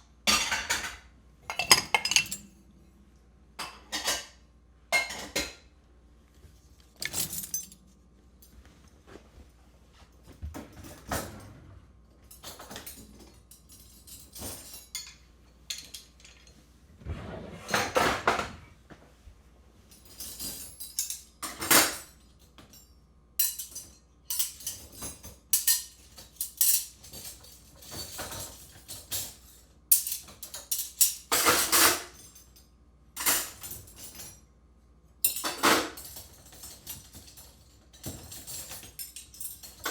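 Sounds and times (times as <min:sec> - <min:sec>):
dishes and cutlery clattering: 0:00.2 - 0:02.6, 0:03.6 - 0:05.7, 0:07.0 - 0:07.9, 0:12.3 - 0:16.6, 0:20.0 - 0:34.4, 0:35.2 - 0:39.9.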